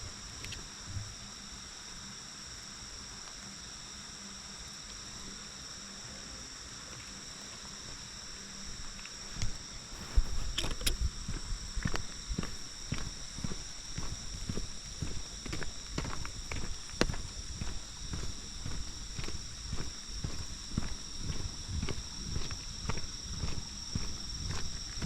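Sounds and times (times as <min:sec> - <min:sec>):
insects chorus: 0:00.0 - 0:25.0
footsteps on a road: 0:08.8 - 0:25.0.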